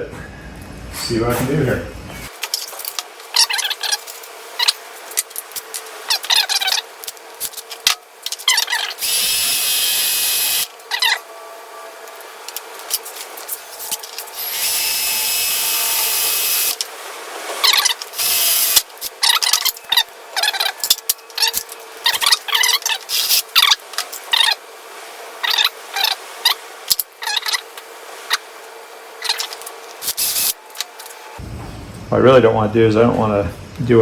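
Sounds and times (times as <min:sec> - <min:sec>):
squeaky scraping: 0:00.0 - 0:02.3.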